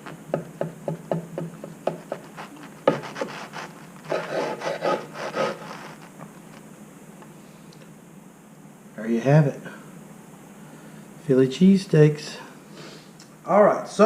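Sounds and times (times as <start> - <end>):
knife sawing through crusty bread: 1.9 - 6.2.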